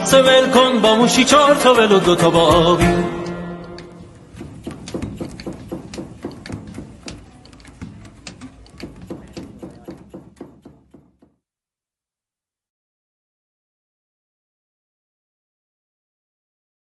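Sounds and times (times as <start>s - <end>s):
loom weaving taps and knocks: 2.2s - 11.4s.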